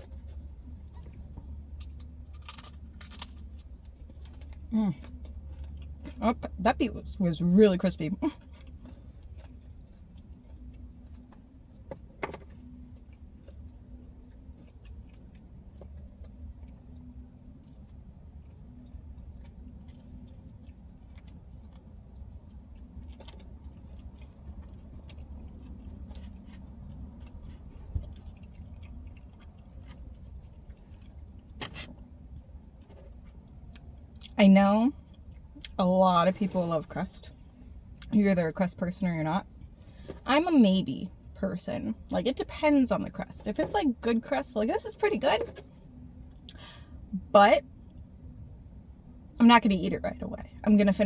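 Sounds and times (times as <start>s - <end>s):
person chewing crispy pizza: 0.0s - 35.8s
steady low hum: 0.0s - 51.0s.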